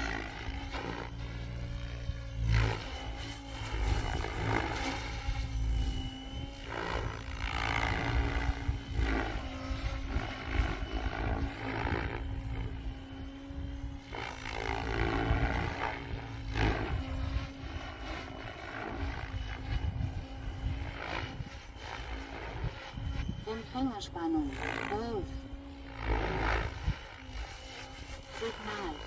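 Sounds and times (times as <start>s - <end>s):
helicopter blade whooshes: 0.0s - 29.0s
rc helicopter rotor hum: 0.0s - 29.0s
wind rumble on microphone: 0.0s - 29.0s.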